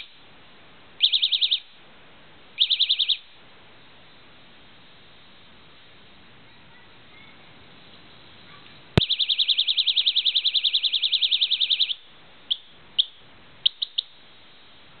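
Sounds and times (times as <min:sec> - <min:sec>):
warbling electronic siren: 0:01.0 - 0:01.7, 0:02.6 - 0:03.2, 0:09.0 - 0:14.1.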